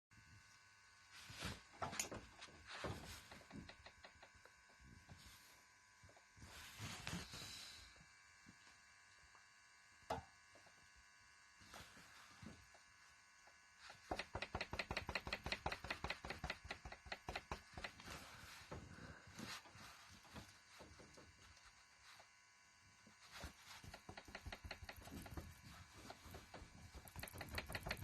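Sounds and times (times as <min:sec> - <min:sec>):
tensioner pulley knocking: 0:14.1 - 0:18.0, 0:23.9 - 0:28.0.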